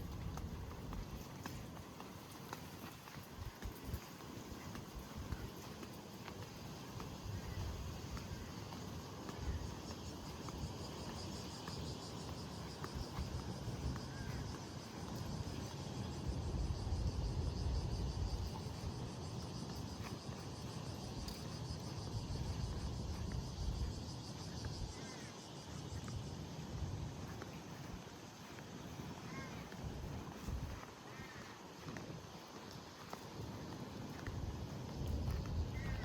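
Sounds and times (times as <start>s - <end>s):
pulsing insect chorus: 0.0s - 36.0s.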